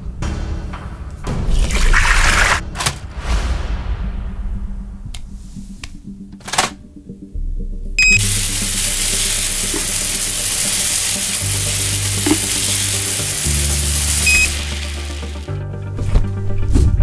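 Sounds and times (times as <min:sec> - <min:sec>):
quiet music: 0:00.0 - 0:17.0
loud steady hiss: 0:08.0 - 0:15.6.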